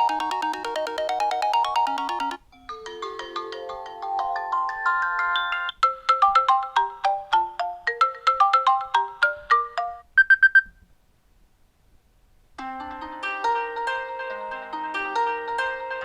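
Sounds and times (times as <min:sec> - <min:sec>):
electronic ringtone melody: 0:00.0 - 0:10.7
rapid high beeps: 0:10.2 - 0:10.7.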